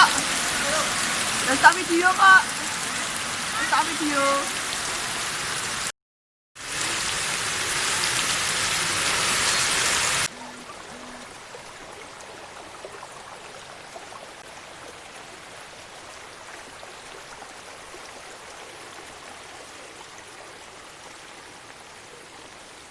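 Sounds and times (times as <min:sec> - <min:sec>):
heavy rain falling: 0:00.0 - 0:05.9, 0:06.6 - 0:16.0.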